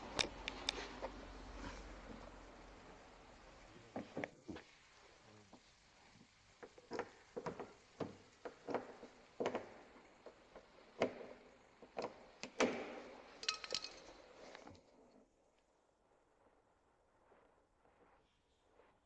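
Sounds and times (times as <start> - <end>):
clicks and knocks of tools: 13.4 - 14.8.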